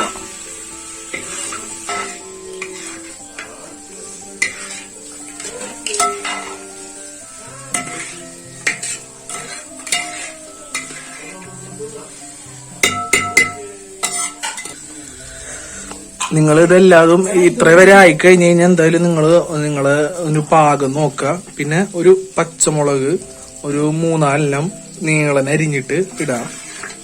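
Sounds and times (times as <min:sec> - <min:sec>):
background music: 0:00.0 - 0:27.0
food sizzling: 0:00.0 - 0:27.0
spoon scraping against pan: 0:01.0 - 0:12.2, 0:12.8 - 0:14.9, 0:15.7 - 0:16.6, 0:26.0 - 0:27.0.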